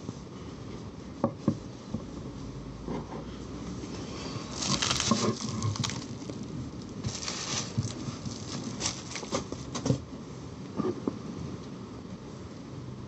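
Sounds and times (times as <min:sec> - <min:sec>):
packaging rustling and crinkling: 0:04.4 - 0:10.0.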